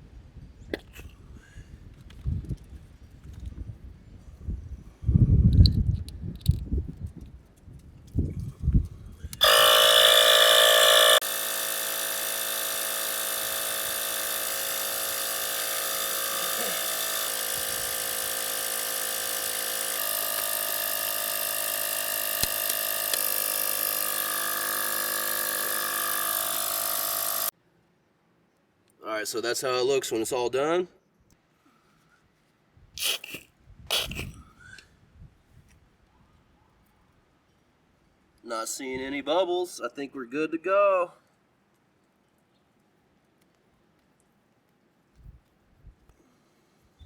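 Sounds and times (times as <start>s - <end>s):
small electric motor droning: 9.4s - 27.5s.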